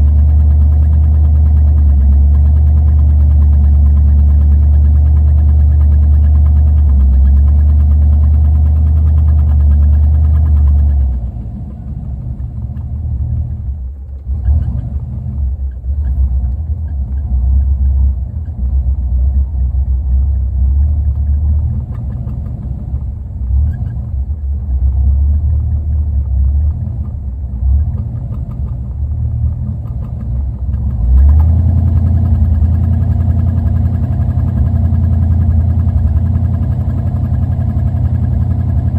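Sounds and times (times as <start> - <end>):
car engine idling roughly: 0.0 - 38.9.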